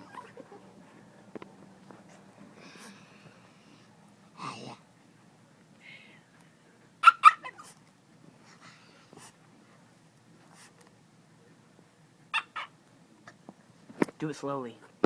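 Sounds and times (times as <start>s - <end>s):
dog making funny noise: 0.0s - 0.6s, 12.4s - 12.7s.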